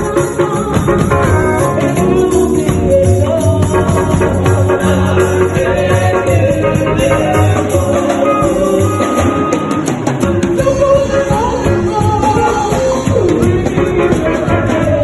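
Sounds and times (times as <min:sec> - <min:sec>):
steady drum beat: 0:00.0 - 0:15.0
voices singing: 0:00.0 - 0:15.0.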